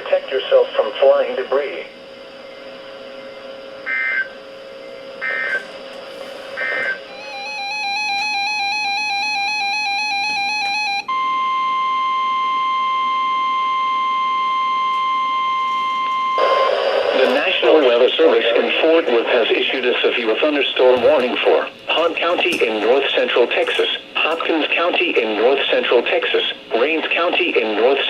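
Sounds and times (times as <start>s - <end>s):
steady warning alarm tone: 0.0s - 28.0s
digital data tone bursts: 0.7s - 5.7s, 6.5s - 11.1s.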